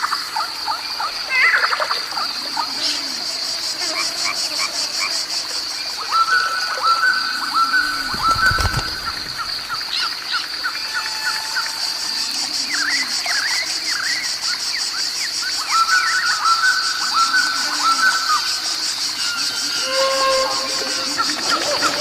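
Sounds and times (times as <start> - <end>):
high insect drone: 0.0 - 22.0
small birds chirping: 0.3 - 10.9.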